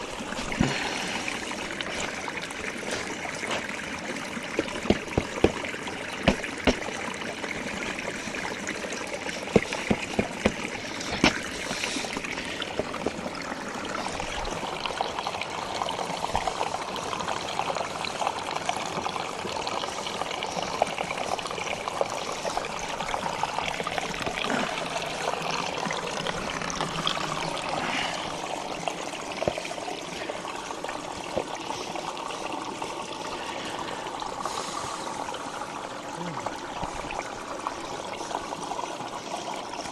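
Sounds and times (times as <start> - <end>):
water running and trickling: 0.0 - 39.9
sharp taps and knocks: 4.6 - 6.9, 9.5 - 11.4.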